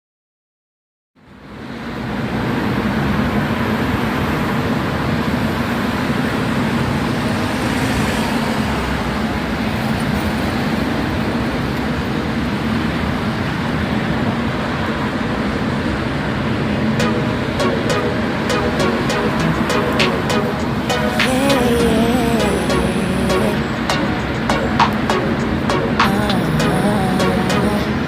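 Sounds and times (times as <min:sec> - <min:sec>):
road and wind noise: 0:01.2 - 0:17.0.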